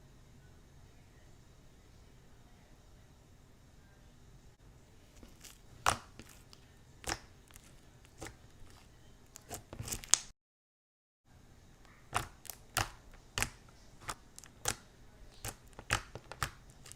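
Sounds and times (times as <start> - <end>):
slime crackling pops: 9.4 - 10.3.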